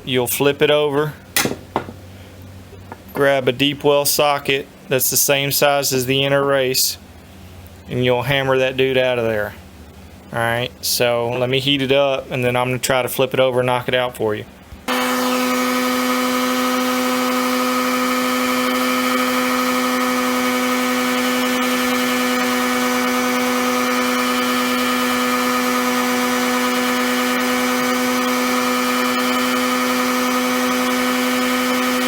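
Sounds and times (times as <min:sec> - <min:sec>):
heat gun fan whining: 0:00.6 - 0:03.2, 0:14.6 - 0:32.0.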